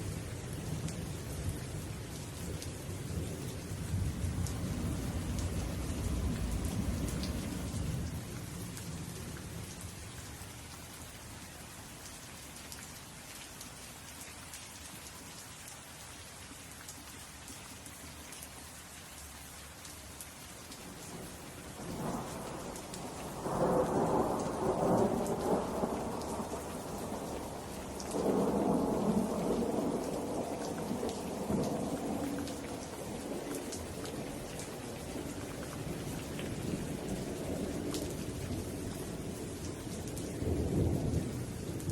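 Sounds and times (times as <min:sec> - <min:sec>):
steady rain: 0:00.0 - 0:41.9
rolling thunder: 0:21.8 - 0:33.4, 0:35.8 - 0:41.9.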